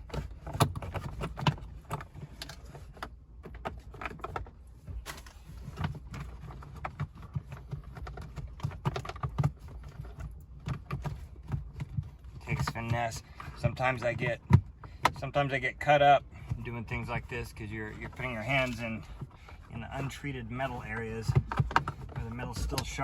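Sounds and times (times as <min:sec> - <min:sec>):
hands pushing cables behind plastic trim: 0:16.4 - 0:23.0.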